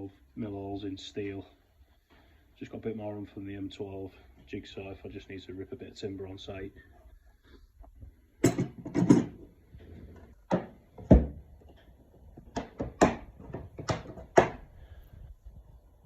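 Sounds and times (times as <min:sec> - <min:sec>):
tools knocking and clunking: 0:08.4 - 0:14.7.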